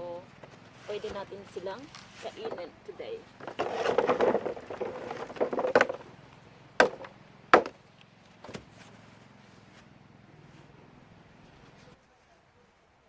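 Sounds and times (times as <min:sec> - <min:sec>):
rustling handling noise: 0:00.1 - 0:10.8
sharp knocks: 0:03.4 - 0:06.1, 0:06.8 - 0:07.8.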